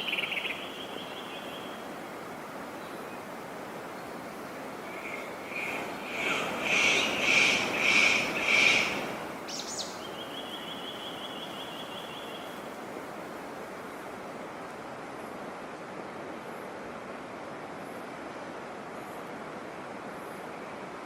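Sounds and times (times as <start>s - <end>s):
bird calling with piping notes: 0.0s - 1.8s, 4.9s - 12.6s
outdoor hiss: 0.0s - 21.0s.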